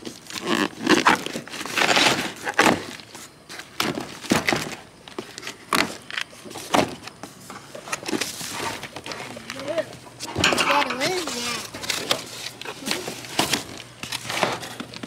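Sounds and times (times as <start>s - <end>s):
knocks and clunks of handling: 3.8s - 15.0s.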